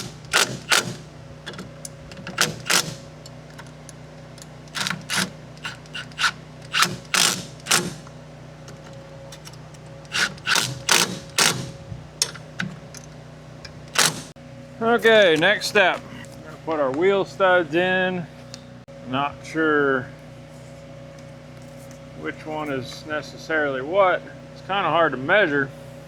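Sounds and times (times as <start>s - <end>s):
ratchet wrench clicking: 0.0s - 8.1s, 8.7s - 13.1s, 13.8s - 14.4s.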